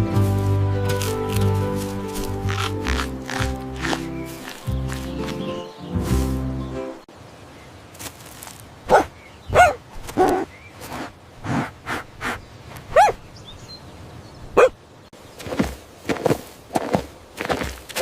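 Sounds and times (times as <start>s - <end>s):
music: 0.0s - 7.1s
dog barking: 8.9s - 10.4s, 12.9s - 13.2s, 14.6s - 14.8s.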